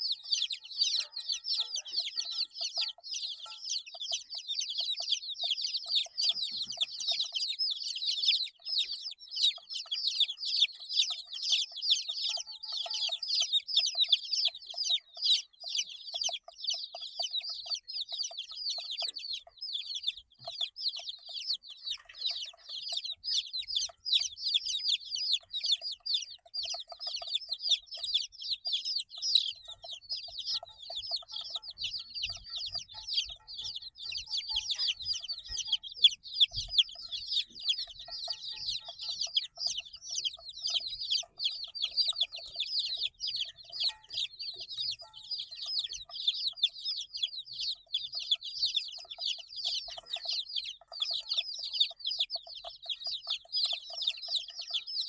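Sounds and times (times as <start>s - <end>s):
chicks peeping: 0.0s - 55.0s.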